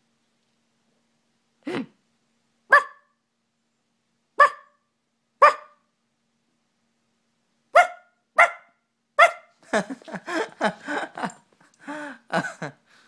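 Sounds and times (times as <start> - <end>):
dog barking: 2.7 - 3.2, 4.4 - 4.8, 5.4 - 5.9, 7.7 - 9.5.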